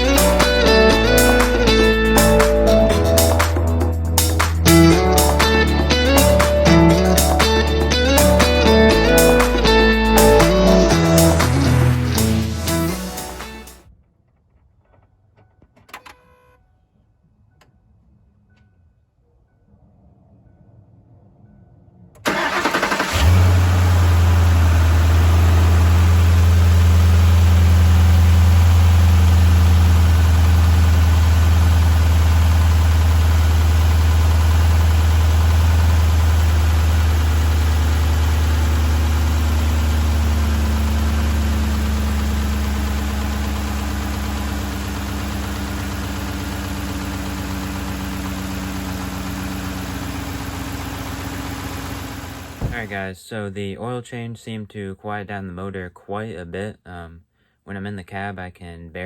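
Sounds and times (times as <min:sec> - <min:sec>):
truck engine cranking and idling: 0:00.0 - 0:13.8, 0:22.2 - 0:53.0.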